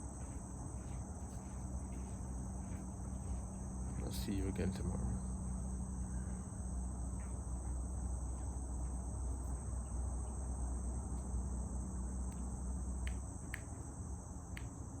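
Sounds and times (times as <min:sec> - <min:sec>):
distant highway traffic rumble: 0:00.0 - 0:15.0
insects chorus: 0:00.0 - 0:15.0.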